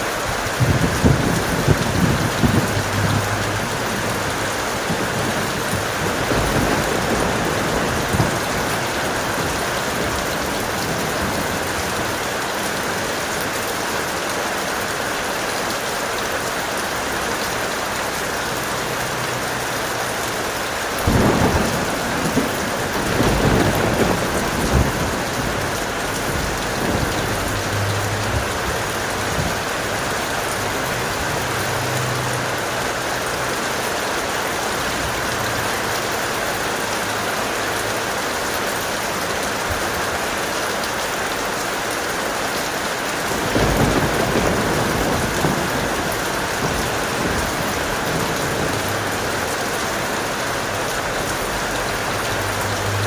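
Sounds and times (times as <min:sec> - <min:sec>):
heavy rain: 0:00.0 - 0:53.0
thunder rumbling: 0:00.1 - 0:13.4, 0:20.9 - 0:38.1, 0:43.0 - 0:53.0.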